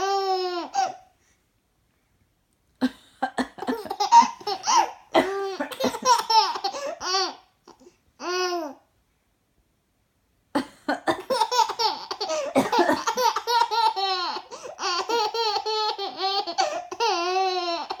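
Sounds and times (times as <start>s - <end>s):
baby laughing and squealing: 3.7s - 7.4s, 11.3s - 18.0s.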